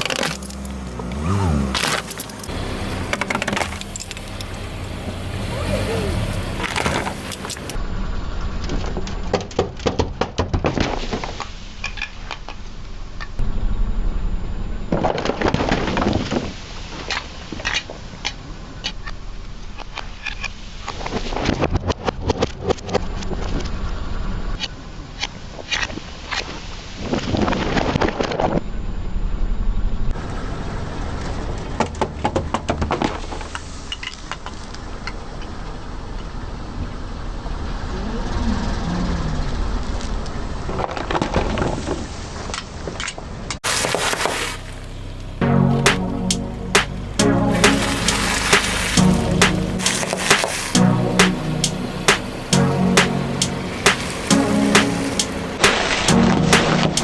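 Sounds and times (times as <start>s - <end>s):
car tyre crushing brittle objects: 0.0s - 4.8s, 6.4s - 7.8s, 15.0s - 23.8s, 31.1s - 36.4s, 39.9s - 45.3s
steady low rumble: 13.4s - 15.1s, 44.7s - 57.0s.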